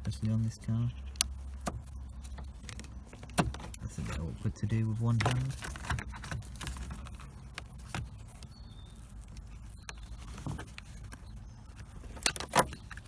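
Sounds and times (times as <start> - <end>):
sharp clicks: 0.0 - 13.0
plastic trim clicks and knocks: 1.2 - 3.9.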